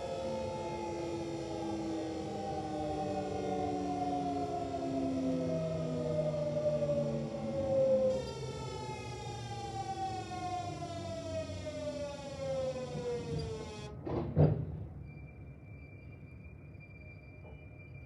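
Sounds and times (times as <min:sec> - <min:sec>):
hoarse groaning inverter noise: 0:00.0 - 0:13.9
train inverter whine: 0:00.0 - 0:14.2, 0:14.9 - 0:18.0.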